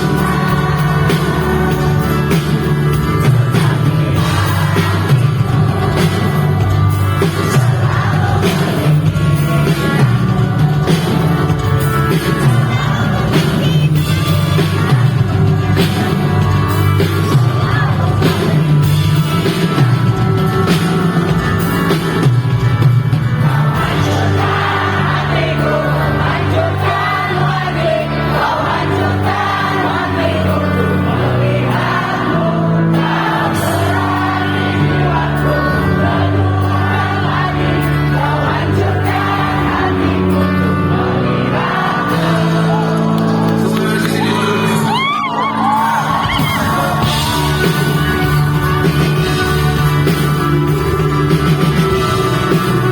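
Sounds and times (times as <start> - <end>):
live pop-rock band: 0.0 - 52.9.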